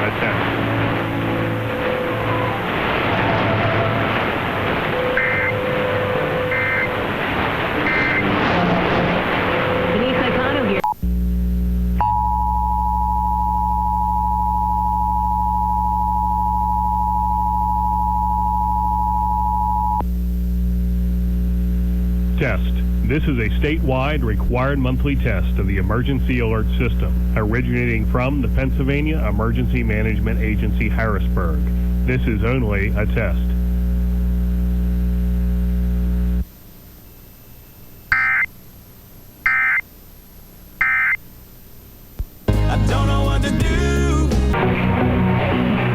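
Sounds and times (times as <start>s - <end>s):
steady low hum: 0.0s - 42.5s
warbling digital data bursts: 0.1s - 10.6s, 38.1s - 38.5s.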